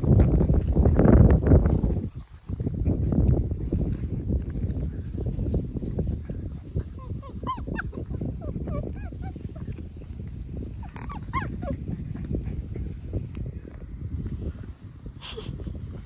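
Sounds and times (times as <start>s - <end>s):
puppies whimpering and yipping: 6.6s - 12.8s.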